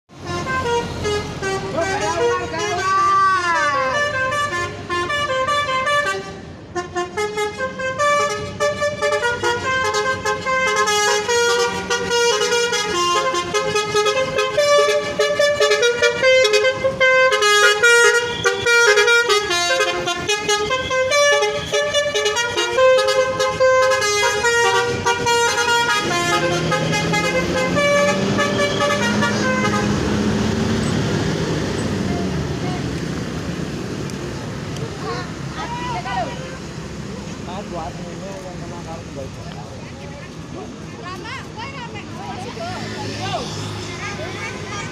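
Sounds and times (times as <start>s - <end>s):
multi-tone bus horn tune: 0.1s - 32.9s.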